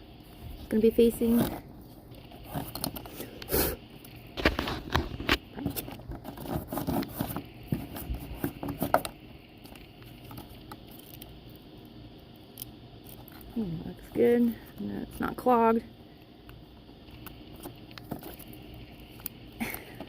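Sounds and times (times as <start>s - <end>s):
faint handling noise: 0.2s - 11.3s.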